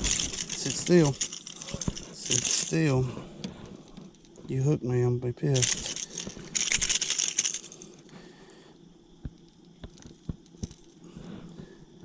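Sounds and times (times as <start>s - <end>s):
rustling and scuffing of handling: 0.0s - 4.7s, 5.6s - 7.8s.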